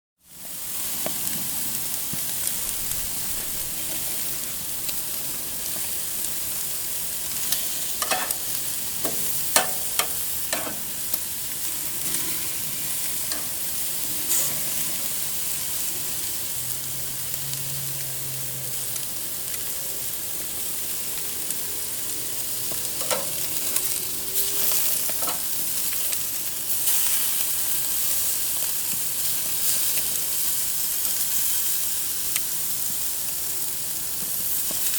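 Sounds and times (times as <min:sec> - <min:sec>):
food sizzling on a grill: 0:00.2 - 0:34.9.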